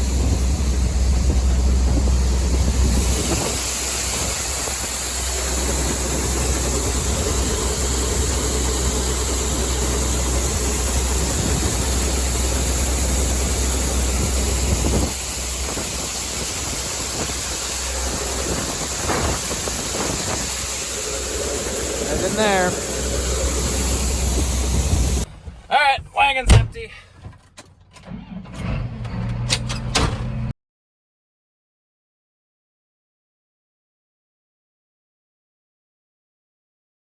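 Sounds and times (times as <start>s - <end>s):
rushing hiss of grain: 0.0s - 25.3s
tractor engine drone: 0.0s - 30.5s.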